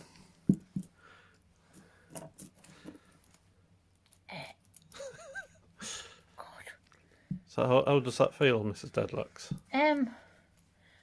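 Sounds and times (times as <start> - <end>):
faint clicks and rustles: 0.0 - 5.0.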